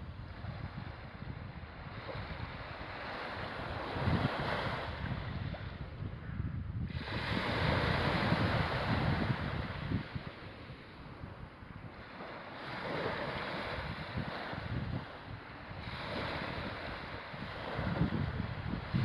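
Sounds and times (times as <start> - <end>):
wind buffeting microphone: 0.0 - 19.0
sea waves washing: 6.9 - 19.0.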